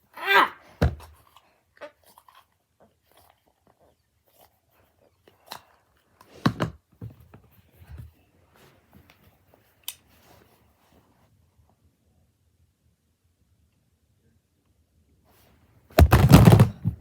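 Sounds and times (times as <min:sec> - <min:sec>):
objects knocking on hard surface: 0:16.0 - 0:17.0
sharp thump: 0:16.0 - 0:17.0.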